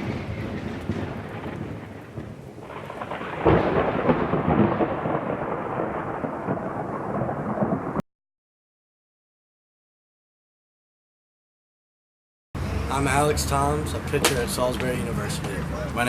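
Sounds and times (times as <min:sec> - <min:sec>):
rain: 0:00.0 - 0:08.0, 0:12.6 - 0:16.0
thunder: 0:00.0 - 0:08.0.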